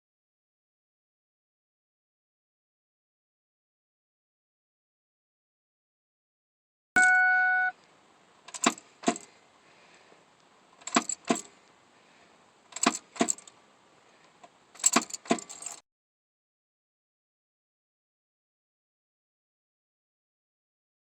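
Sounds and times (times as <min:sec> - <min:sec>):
short beep: 0:07.0 - 0:07.8
keys jangling: 0:10.8 - 0:11.5, 0:14.8 - 0:15.8.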